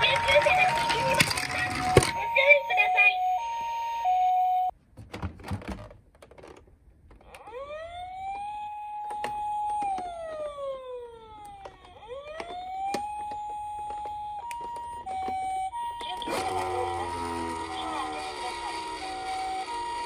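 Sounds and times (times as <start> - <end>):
toy ambulance siren wailing: 0.0 - 4.7, 7.2 - 20.0.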